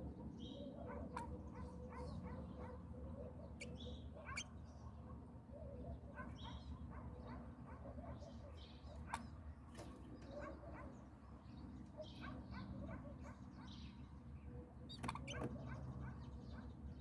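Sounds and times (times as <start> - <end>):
small birds chirping: 0.4 - 4.8, 13.2 - 17.0.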